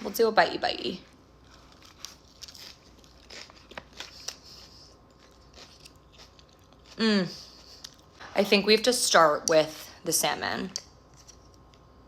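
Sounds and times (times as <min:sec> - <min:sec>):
chewing lettuce crunches: 0:01.4 - 0:08.1.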